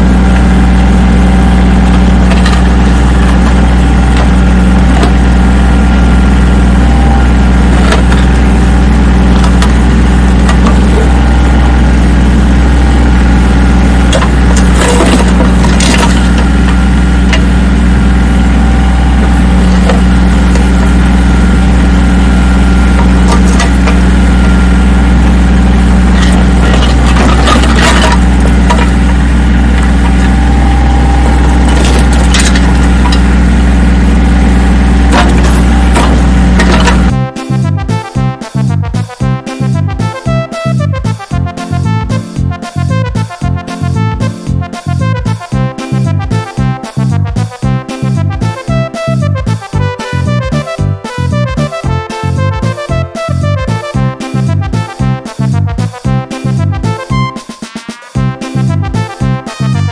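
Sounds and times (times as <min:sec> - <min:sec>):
digging machine engine running: 0:00.0 - 0:57.4, 0:58.2 - 0:59.9
concrete knocking and scraping: 0:01.7 - 0:05.2, 0:07.4 - 0:09.8, 0:10.4 - 0:11.6, 0:14.0 - 0:17.6, 0:22.9 - 0:24.1, 0:25.2 - 0:33.3, 0:35.1 - 0:37.2.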